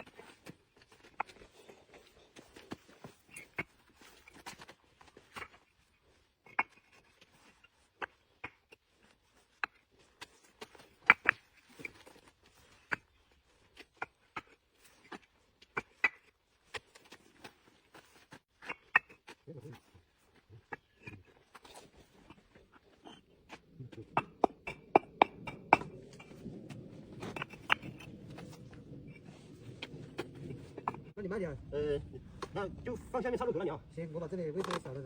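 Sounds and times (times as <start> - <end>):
bricks clacking together: 18.6 - 19.4, 20.6 - 26.4, 27.2 - 28.1.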